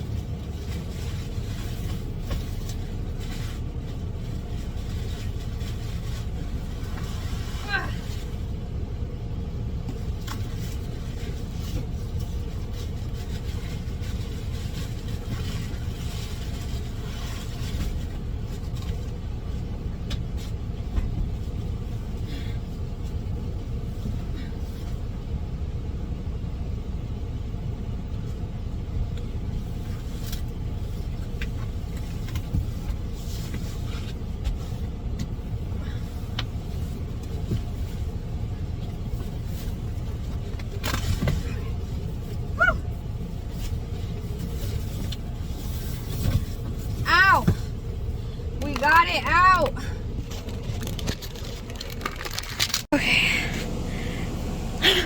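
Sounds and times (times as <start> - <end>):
truck engine idling: 0.0 - 55.0
cardboard and plastic rustling: 10.0 - 22.0, 43.3 - 52.9.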